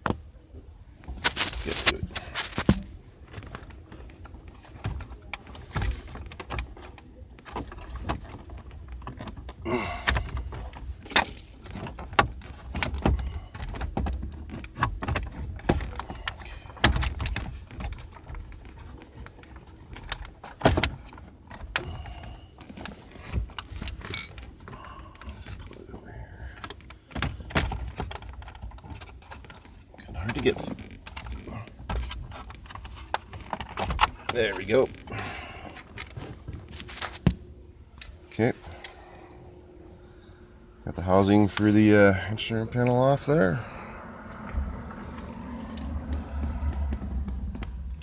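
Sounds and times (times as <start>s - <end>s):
short rustle: 1.1s - 2.9s.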